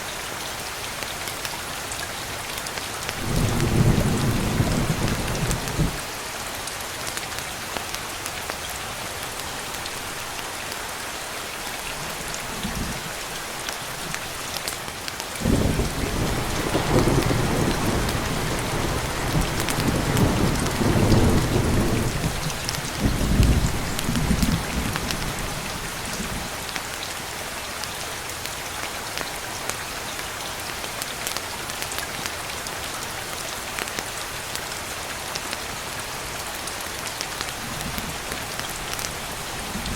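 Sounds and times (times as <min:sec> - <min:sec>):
steady rain falling: 0:00.0 - 0:39.9
rolling thunder: 0:15.4 - 0:25.4.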